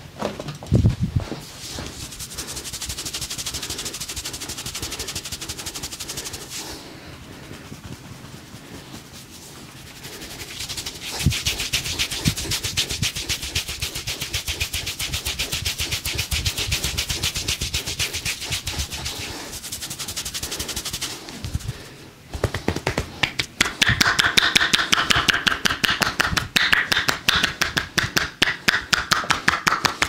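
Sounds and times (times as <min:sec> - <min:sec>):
percussive massage tapping: 0:22.3 - 0:30.0.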